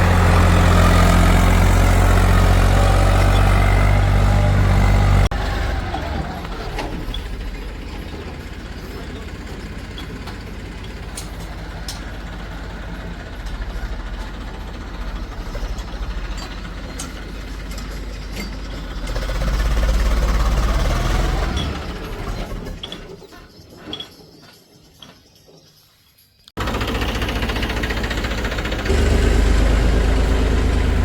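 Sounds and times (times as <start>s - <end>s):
heavy diesel engine running: 0.0s - 22.8s, 26.6s - 31.0s.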